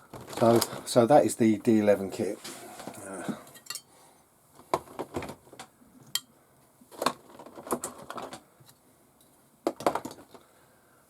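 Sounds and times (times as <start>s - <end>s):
rustling: 0.0s - 1.1s, 6.9s - 8.4s
small parts clicking and knocking: 6.9s - 10.5s.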